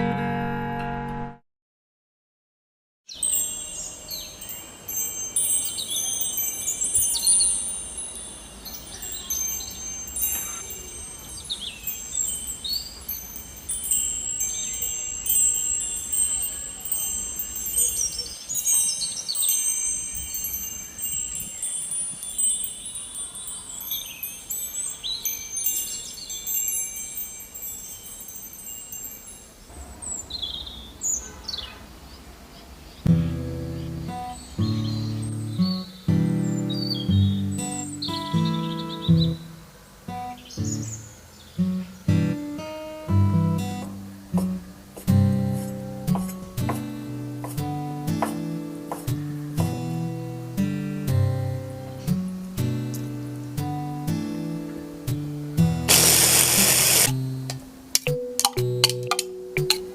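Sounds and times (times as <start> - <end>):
wind chimes ringing: 3.1 - 30.5, 55.9 - 57.1
bird-like chirps: 8.4 - 13.3, 13.9 - 22.7, 33.7 - 39.5.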